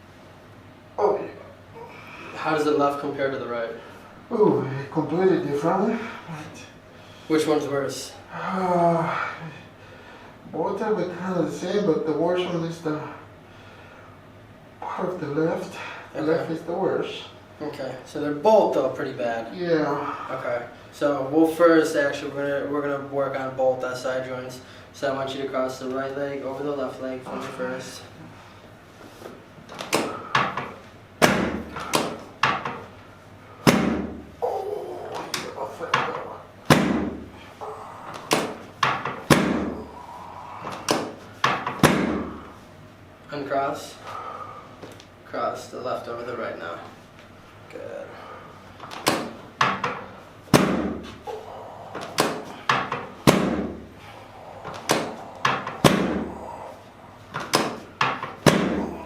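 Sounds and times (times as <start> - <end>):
sharp knocks and thuds: 29.8 - 32.8, 33.6 - 34.2, 36.7 - 37.2, 38.2 - 39.8, 40.8 - 42.3, 48.9 - 51.2, 52.0 - 53.8, 54.7 - 56.3.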